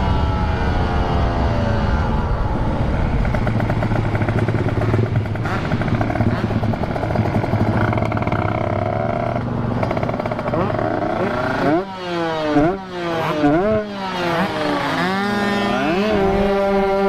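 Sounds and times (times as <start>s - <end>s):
two-stroke motorcycle engine revving: 3.0s - 17.0s.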